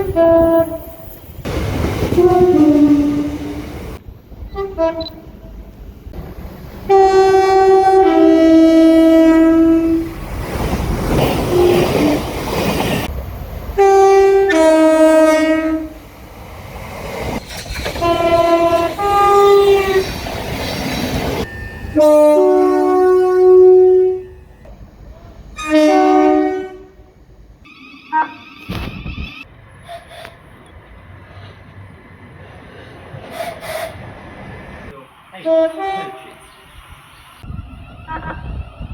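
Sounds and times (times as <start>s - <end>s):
passing train rumble: 0.0s - 38.9s
two-note train horn blasts: 2.2s - 3.6s, 6.9s - 10.1s, 13.8s - 16.0s, 21.9s - 24.6s, 25.6s - 27.1s.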